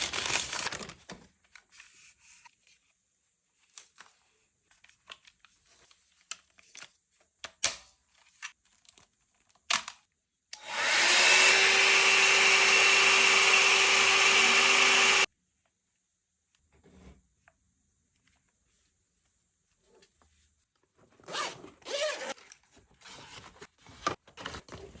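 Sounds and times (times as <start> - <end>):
hot air brush fan blowing: 10.6 - 15.3.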